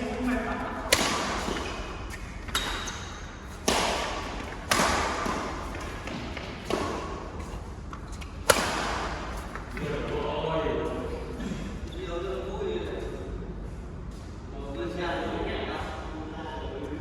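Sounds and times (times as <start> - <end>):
badminton racket hitting shuttlecock: 0.3 - 7.3, 8.4 - 9.3.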